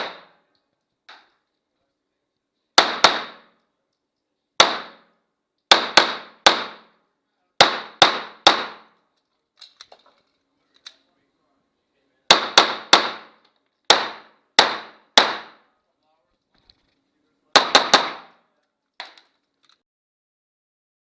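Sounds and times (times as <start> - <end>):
pistol shots: 0.0 - 0.4, 2.8 - 3.6, 4.6 - 5.1, 5.7 - 7.0, 7.6 - 9.0, 12.3 - 15.7, 17.5 - 18.4.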